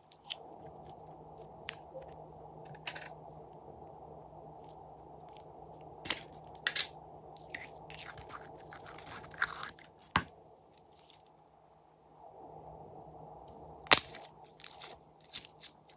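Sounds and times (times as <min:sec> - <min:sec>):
steady low hum: 0:00.0 - 0:15.9
slime crackling and popping: 0:13.9 - 0:15.9.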